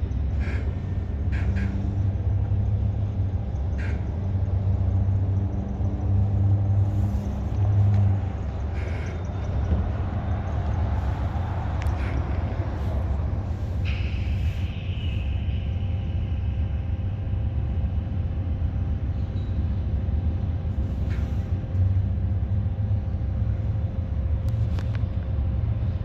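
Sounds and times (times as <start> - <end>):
diesel locomotive rumbling: 0.0 - 26.0.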